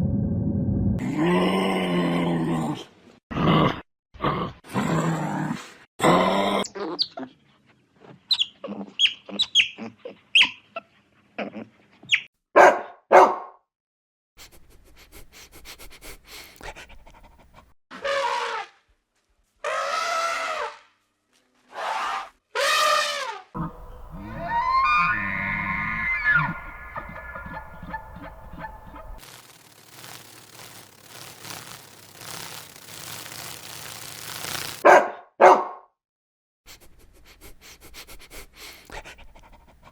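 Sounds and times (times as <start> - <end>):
animal cries: 21.8 - 29.2
long animal calls: 23.6 - 29.3.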